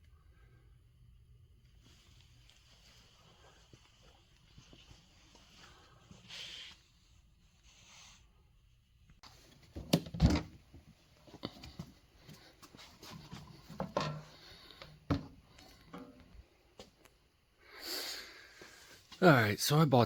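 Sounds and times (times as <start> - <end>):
rubbing and handling noise: 9.2 - 17.2
wooden knocks and clunks: 13.4 - 14.4, 15.0 - 15.4.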